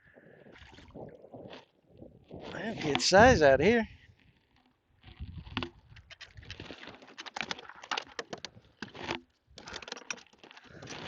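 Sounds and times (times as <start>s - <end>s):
sharp clicks and light knocks: 5.5s - 11.0s.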